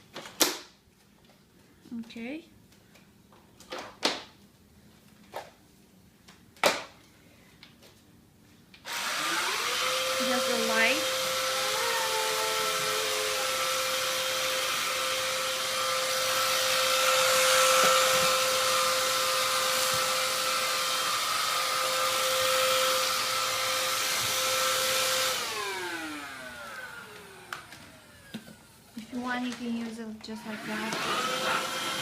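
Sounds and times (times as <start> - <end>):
vacuum motor whine: 8.9 - 28.8, 30.3 - 32.0.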